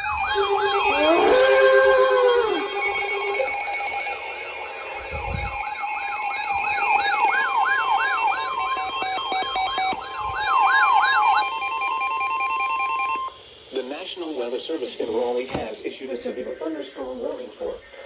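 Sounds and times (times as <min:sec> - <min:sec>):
rapid beeping: 0:00.0 - 0:13.4
sweeping siren-like alarm: 0:00.0 - 0:13.4
steady warning tone: 0:00.0 - 0:18.0.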